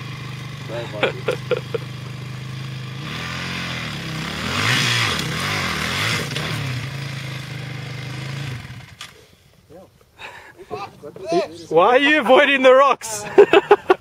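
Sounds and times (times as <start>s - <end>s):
dirt bike engine idling: 0.0s - 9.1s
motorcycle engine revving: 0.0s - 9.2s.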